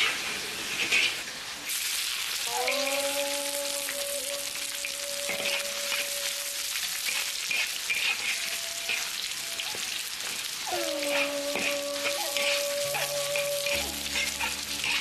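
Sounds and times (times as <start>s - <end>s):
food sizzling in a wok: 0.0s - 15.0s
spatula scraping wok: 4.8s - 15.0s.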